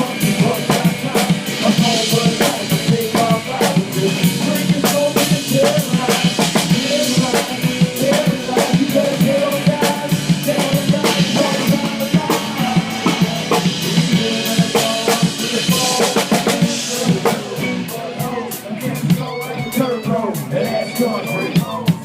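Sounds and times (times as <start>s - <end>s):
drum kit beat: 0.0s - 22.0s
live band music: 0.0s - 22.0s.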